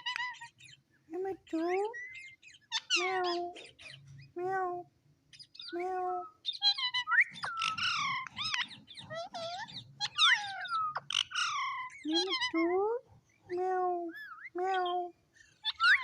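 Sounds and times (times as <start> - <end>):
parrot chirps and squawks: 0.0 - 4.4, 5.3 - 13.5, 14.1 - 16.0
parrot calling: 1.5 - 4.4, 5.3 - 12.8, 14.0 - 16.0.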